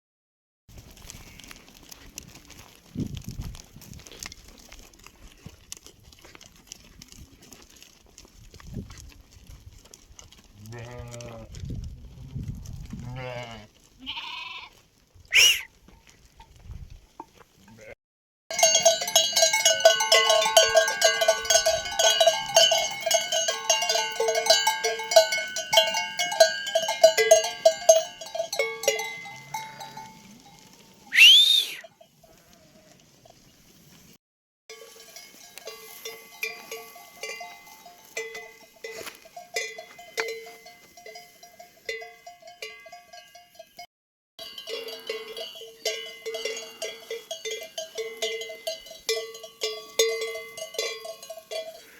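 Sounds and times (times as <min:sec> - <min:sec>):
high-pitched call: 0:15.3 - 0:15.7, 0:31.1 - 0:31.8
sheep bells clanking: 0:18.5 - 0:31.1, 0:34.7 - 0:51.9.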